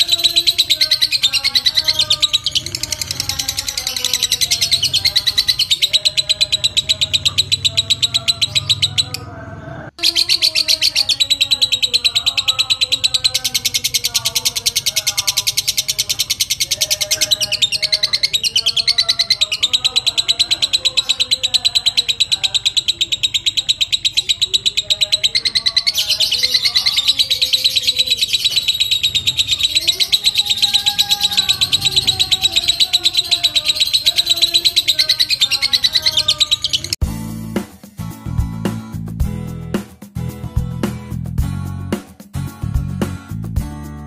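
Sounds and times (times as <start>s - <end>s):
bird chattering trill: 0.0s - 9.3s, 9.9s - 37.0s
music: 37.0s - 44.0s.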